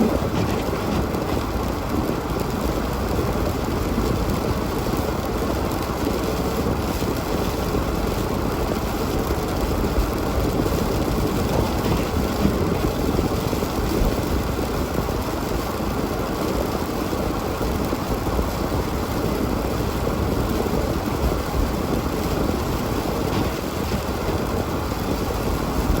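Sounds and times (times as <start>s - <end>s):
car engine and road rumble: 0.0s - 26.0s.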